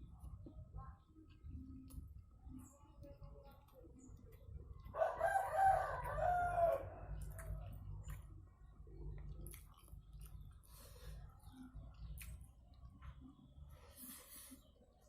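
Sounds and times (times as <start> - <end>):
rooster crowing: 5.0 - 7.2.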